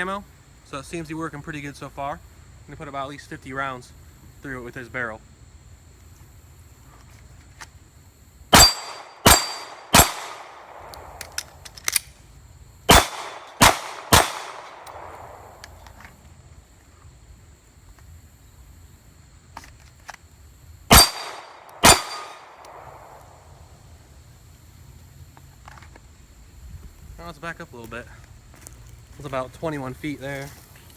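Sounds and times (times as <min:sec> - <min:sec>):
pistol shots with echo: 0:08.5 - 0:11.2, 0:12.9 - 0:15.6, 0:20.9 - 0:23.2.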